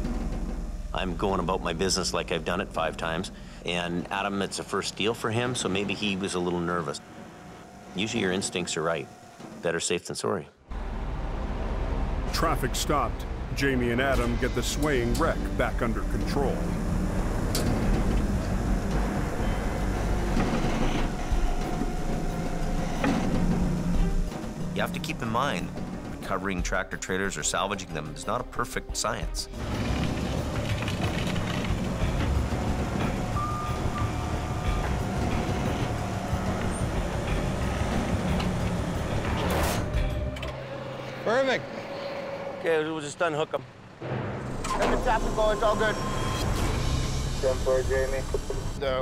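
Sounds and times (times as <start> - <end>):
diesel truck engines running: 10.7 - 26.5, 29.6 - 48.8
thin high tone: 32.0 - 43.0, 44.6 - 48.3.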